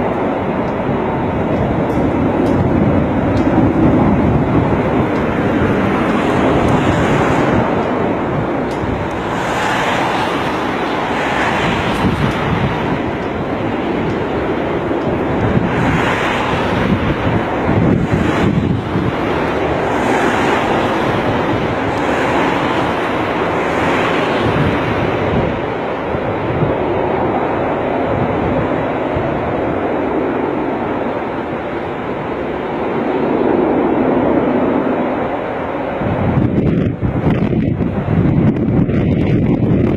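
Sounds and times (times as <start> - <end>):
airliner rushing noise: 0.0 - 39.9
wind buffeting microphone: 0.0 - 39.9.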